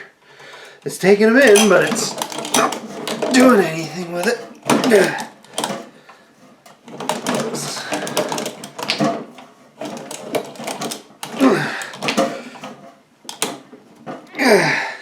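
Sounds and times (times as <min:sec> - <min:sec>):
meat grinder crunching plastic: 0:01.4 - 0:06.1, 0:06.8 - 0:13.6.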